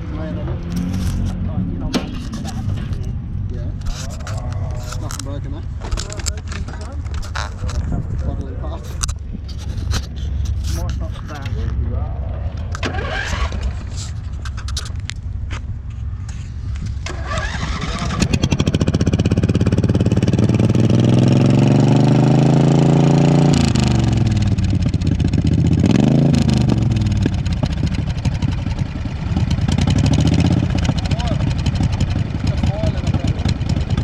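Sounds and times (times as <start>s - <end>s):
lawnmower engine revving: 12.8s - 13.8s, 17.0s - 34.0s.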